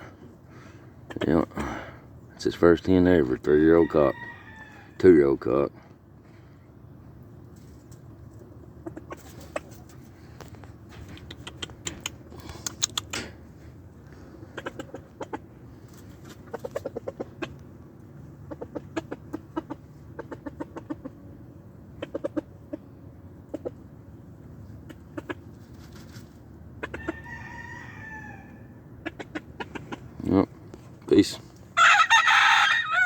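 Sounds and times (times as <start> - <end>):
chickens clucking: 7.4 - 31.3
sharp clicks: 11.1 - 13.3.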